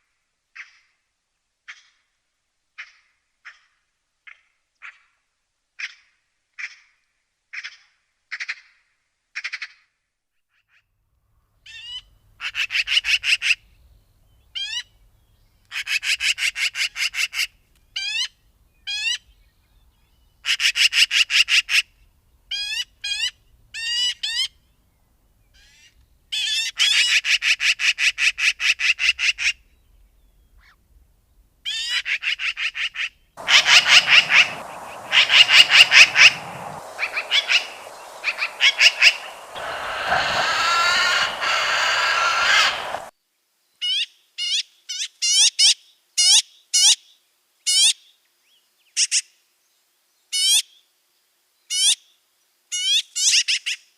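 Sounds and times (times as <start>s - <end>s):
magpie calling and chattering: 33.4s - 43.1s.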